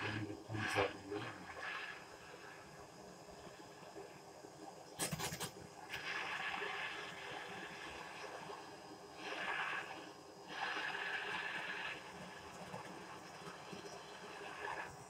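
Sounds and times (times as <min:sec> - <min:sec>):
gas torch flame hissing: 0:05.0 - 0:15.0.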